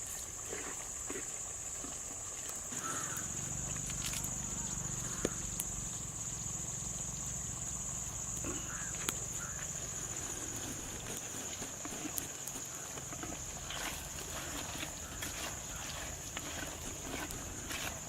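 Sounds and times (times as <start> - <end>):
high-pitched insect buzz: 2.7 - 11.1.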